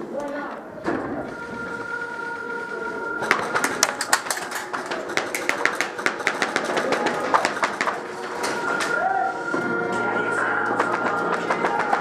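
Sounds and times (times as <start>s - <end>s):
airsoft guns firing: 3.6s - 8.1s.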